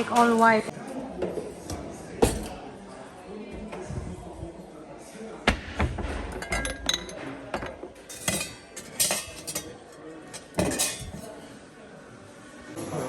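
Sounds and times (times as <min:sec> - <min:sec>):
utensils and dishes clattering: 0:00.0 - 0:02.7, 0:06.0 - 0:11.5.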